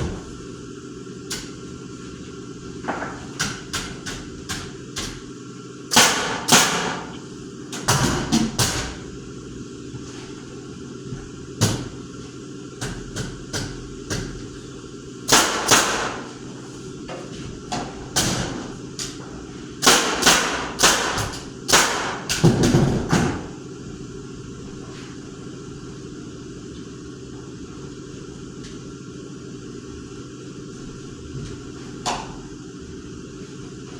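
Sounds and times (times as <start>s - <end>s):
knocks and thuds: 0.0s - 0.4s, 22.4s - 23.5s
steady low hum: 0.0s - 33.9s.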